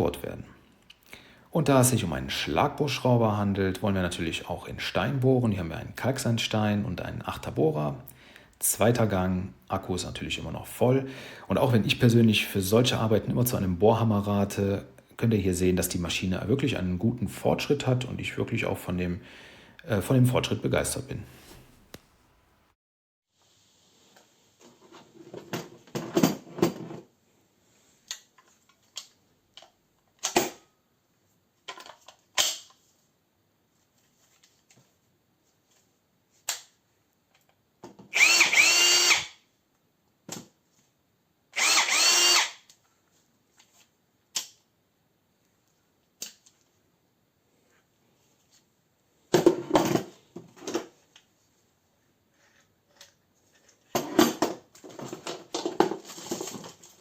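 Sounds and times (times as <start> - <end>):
drill motor whining: 38.1 - 39.4, 41.6 - 42.6.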